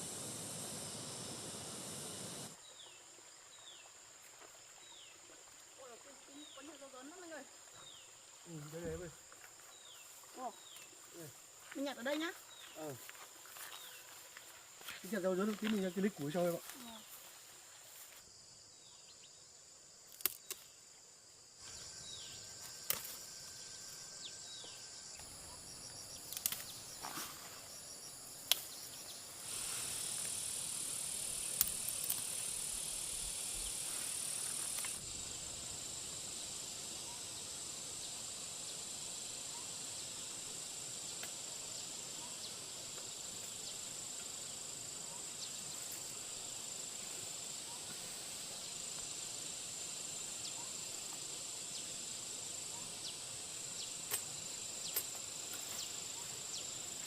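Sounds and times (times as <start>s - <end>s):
chorus of forest insects: 0.0s - 57.0s
sharp snaps or clicks: 20.1s - 20.7s, 26.3s - 26.7s, 31.5s - 32.4s.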